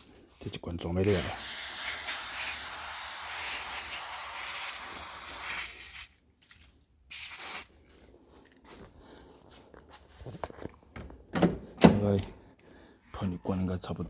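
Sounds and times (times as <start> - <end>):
aerosol can spraying: 1.0 - 6.1, 7.1 - 7.7.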